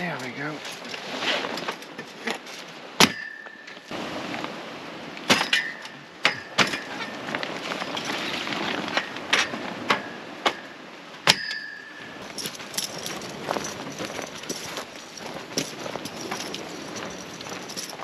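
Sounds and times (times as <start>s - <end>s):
metallic clinks and knocks: 11.3s - 18.0s.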